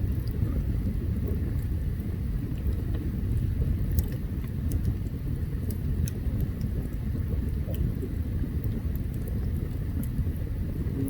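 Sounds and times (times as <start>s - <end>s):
steady low rumble: 0.0s - 11.0s
campfire crackling and popping: 2.5s - 10.3s.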